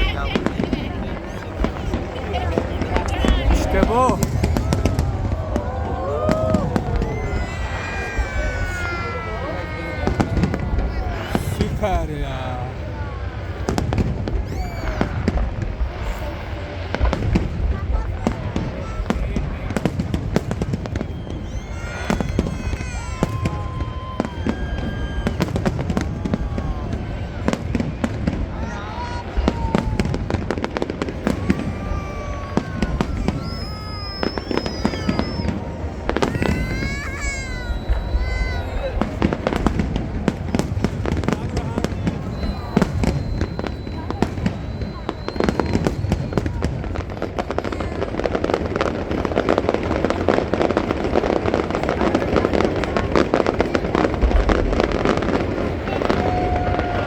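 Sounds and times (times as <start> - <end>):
fireworks bursting and crackling: 0.0 - 57.0
high whistling fireworks: 0.0 - 57.0.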